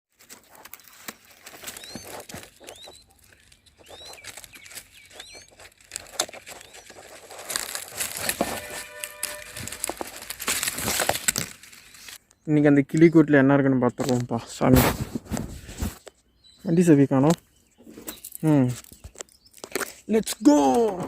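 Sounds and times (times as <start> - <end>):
clicks and rustling: 0.1 - 13.1
bird chirping: 0.4 - 14.7, 16.0 - 21.0.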